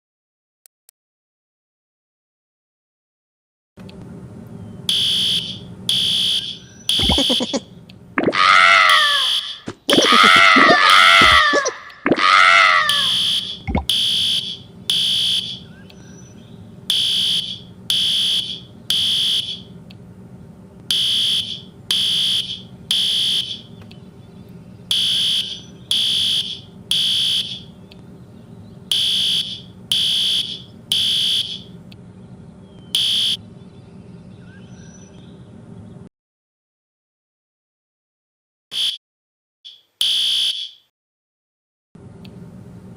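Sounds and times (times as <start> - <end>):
fire alarm high beeps: 4.9 - 7.6, 13.1 - 15.7, 16.9 - 19.7, 20.9 - 23.7, 24.9 - 27.7, 28.9 - 31.7, 33.0 - 33.4, 40.0 - 40.8
loud wavering wail: 8.2 - 13.2.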